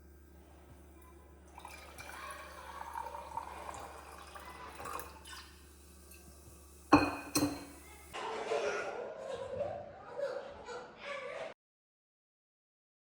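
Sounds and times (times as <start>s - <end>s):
faint liquid trickling: 0.0s - 8.2s.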